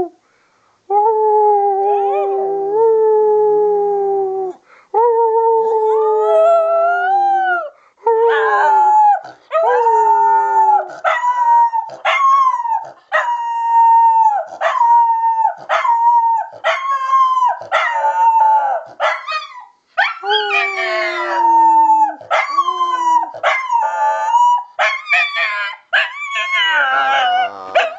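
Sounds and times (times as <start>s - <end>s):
dog howling: 8.3s - 27.9s.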